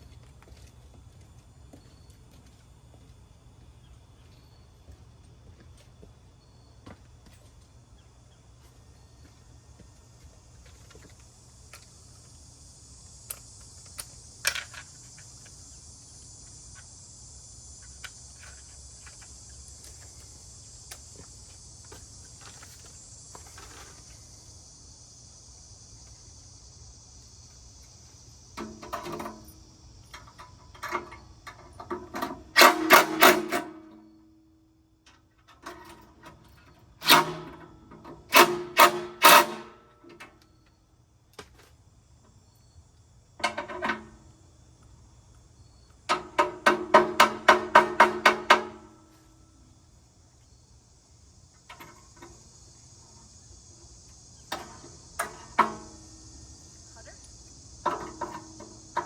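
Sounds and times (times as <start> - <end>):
steady high hiss: 0.0 - 35.3, 36.1 - 59.0
metal clanks and knocks: 30.1 - 33.9, 43.4 - 44.2, 46.1 - 48.9, 57.8 - 59.0.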